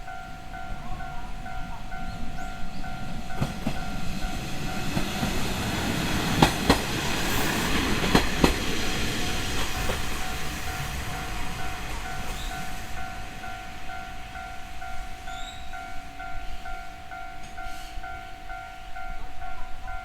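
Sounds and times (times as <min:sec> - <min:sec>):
train wheels clicking over rail joints: 0:02.4 - 0:13.5.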